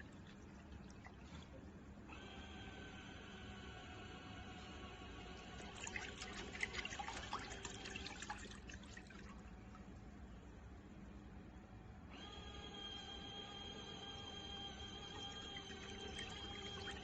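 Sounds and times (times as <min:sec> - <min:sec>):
faint steady hum: 0:00.0 - 0:17.0
water pouring and splashing: 0:05.6 - 0:09.9.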